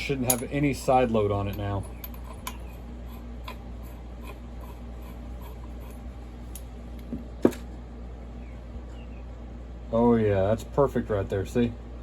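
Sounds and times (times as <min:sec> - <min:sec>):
light clicks of metal parts handled: 0:00.0 - 0:02.8, 0:05.9 - 0:07.6.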